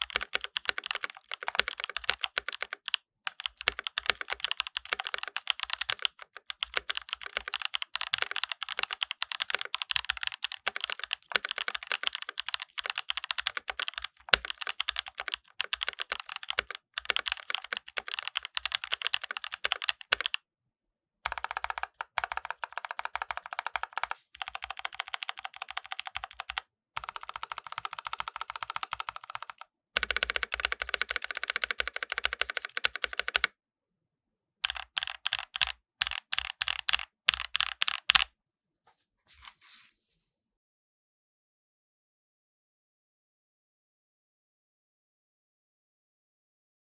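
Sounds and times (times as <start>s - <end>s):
mechanical keyboard typing: 0.0s - 20.4s, 21.3s - 33.5s, 34.6s - 38.3s.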